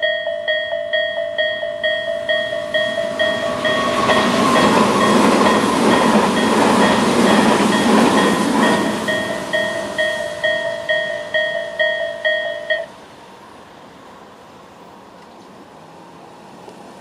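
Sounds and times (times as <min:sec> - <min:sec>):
electronic level crossing bell ringing: 0:00.0 - 0:12.9
train rumbling past: 0:00.0 - 0:17.0.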